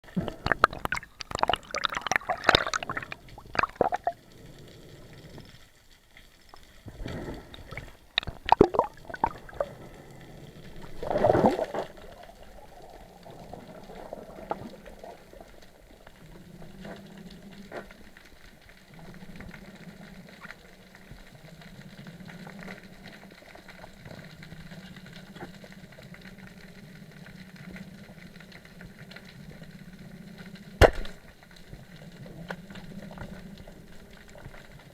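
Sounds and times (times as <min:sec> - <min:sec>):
water splashing and bubbling: 0:00.0 - 0:05.8, 0:06.4 - 0:25.9, 0:30.8 - 0:34.9.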